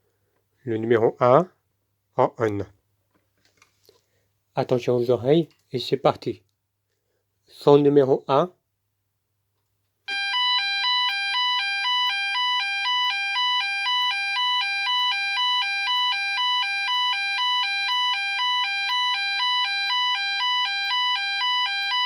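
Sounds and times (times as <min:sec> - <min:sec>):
two-tone fire alarm: 0:10.1 - 0:22.0.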